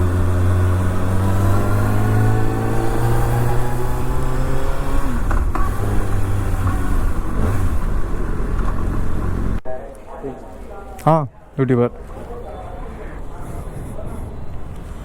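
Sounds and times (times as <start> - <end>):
motorcycle engine running: 0.0 - 9.6.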